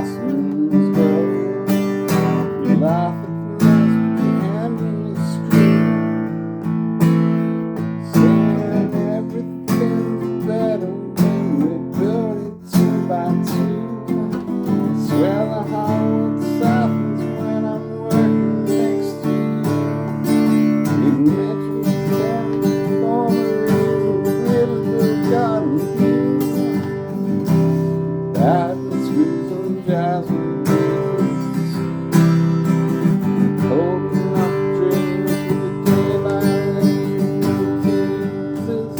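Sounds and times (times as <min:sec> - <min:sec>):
acoustic guitar strumming: 0:00.0 - 0:38.9.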